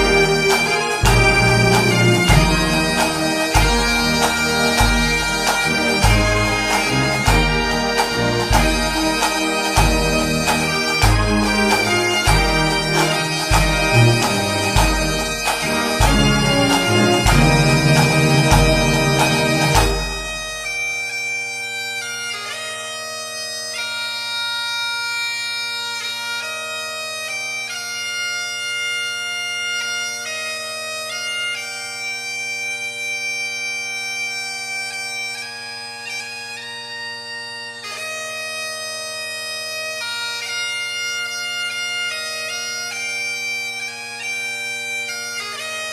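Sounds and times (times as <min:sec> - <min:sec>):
heavy drum beat: 0:00.0 - 0:20.5
bagpipe music: 0:00.0 - 0:45.9.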